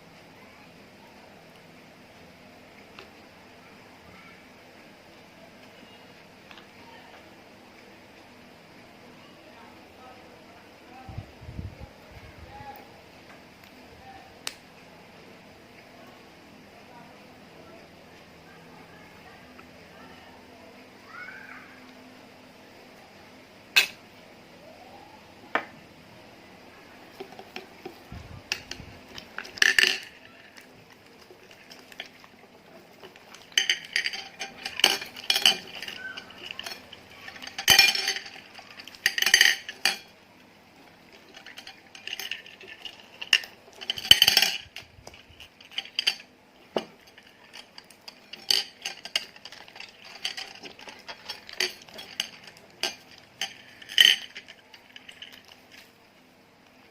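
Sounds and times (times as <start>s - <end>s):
tool clinking on container: 33.3s - 40.1s, 41.2s - 55.9s.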